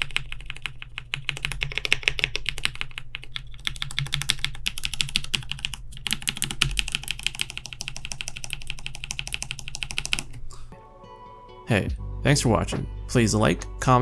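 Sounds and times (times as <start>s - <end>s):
mechanical keyboard typing: 0.0s - 10.4s.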